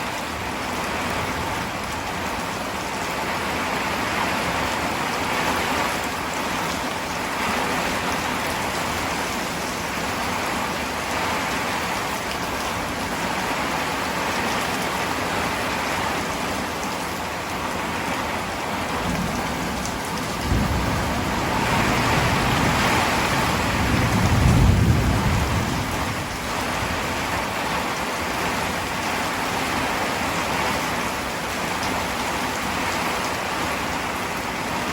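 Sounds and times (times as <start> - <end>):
heavy rain falling: 0.0 - 34.9
low rumble of thunder: 19.0 - 27.4.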